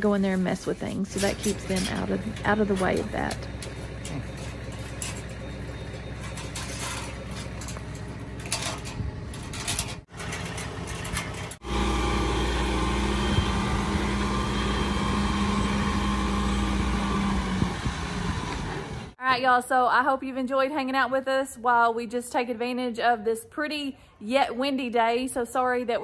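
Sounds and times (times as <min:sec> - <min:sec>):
vehicle engine running: 0:01.1 - 0:19.2.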